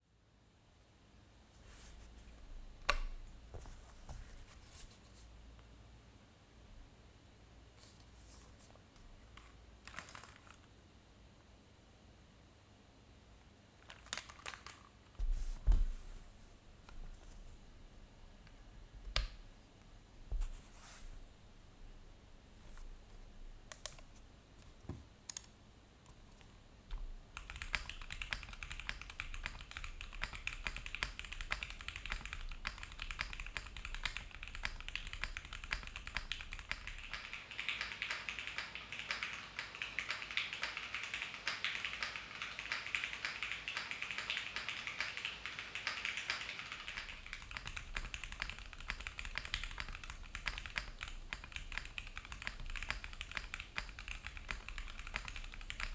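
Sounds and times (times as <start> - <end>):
mechanical keyboard typing: 9.9 - 10.6, 13.9 - 14.8, 27.3 - 55.9.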